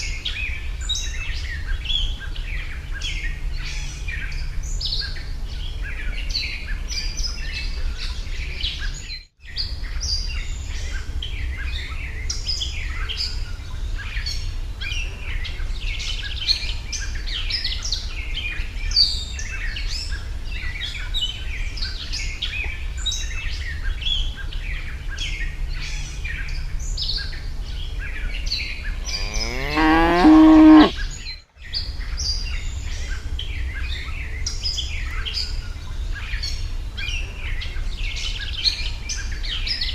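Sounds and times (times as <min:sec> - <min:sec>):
small birds chirping: 0:09.6 - 0:39.9
cow mooing: 0:29.0 - 0:31.2.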